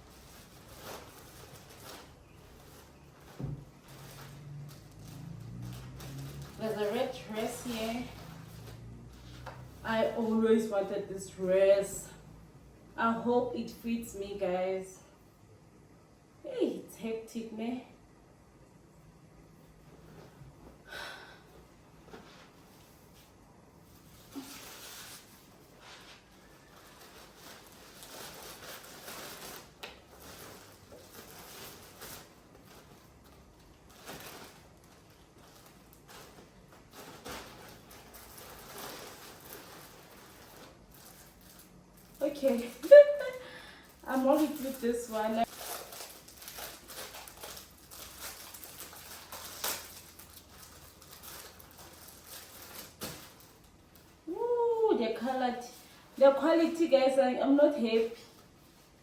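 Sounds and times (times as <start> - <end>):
plastic packaging crackling: 0.0 - 10.6, 24.0 - 59.0
clothes and plastic rustling: 0.0 - 12.1, 18.8 - 59.0.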